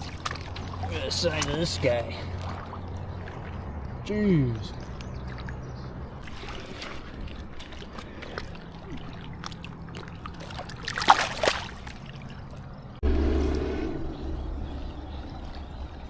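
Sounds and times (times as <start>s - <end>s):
river water trickling: 0.0s - 16.0s
water splash: 6.2s - 12.2s
low rumble: 13.0s - 16.0s.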